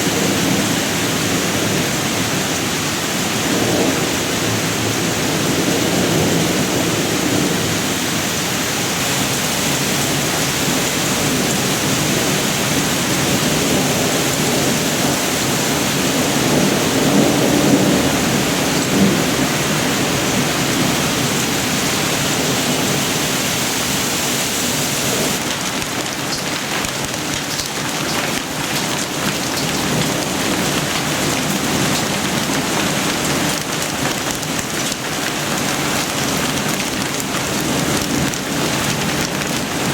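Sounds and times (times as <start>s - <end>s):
heavy rain pouring: 0.0s - 39.9s
low thunder rumble: 9.8s - 23.1s.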